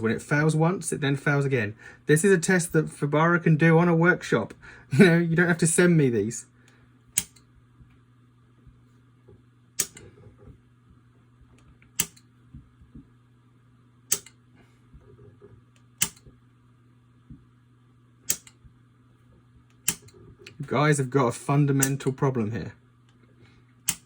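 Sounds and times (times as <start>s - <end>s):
faint steady hum: 0.0s - 24.0s
light switch clicks: 9.8s - 10.0s, 12.0s - 12.3s, 14.1s - 14.4s, 16.0s - 16.3s, 18.3s - 18.6s.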